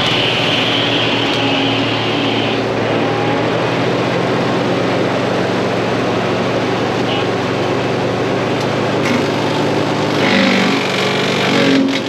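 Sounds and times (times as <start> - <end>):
diesel engine running: 0.0 - 12.0
high whine: 0.0 - 12.0.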